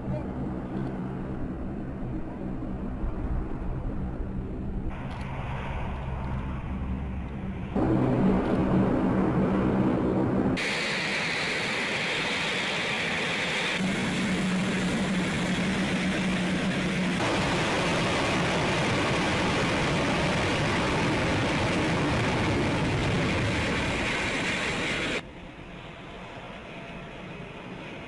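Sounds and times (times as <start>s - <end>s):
jet engine rush: 0.0s - 28.0s
low hum: 0.0s - 28.0s.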